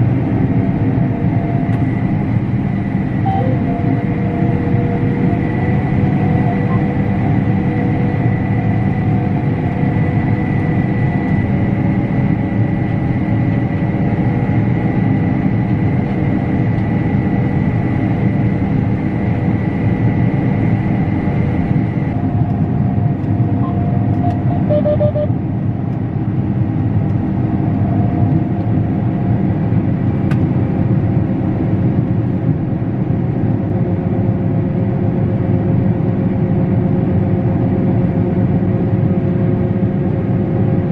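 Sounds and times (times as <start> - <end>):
combine harvester running: 0.0 - 40.9
steady high tone: 3.1 - 4.5, 6.2 - 7.7, 23.6 - 25.4
quick beeps: 23.6 - 25.3.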